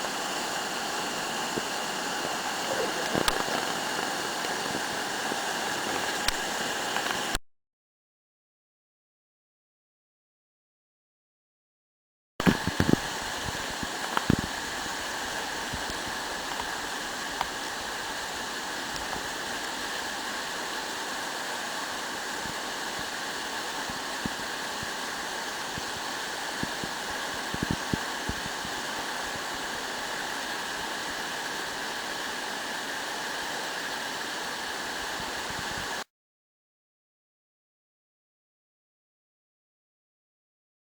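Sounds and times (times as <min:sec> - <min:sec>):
river water rushing: 0:00.0 - 0:07.3, 0:12.4 - 0:36.0.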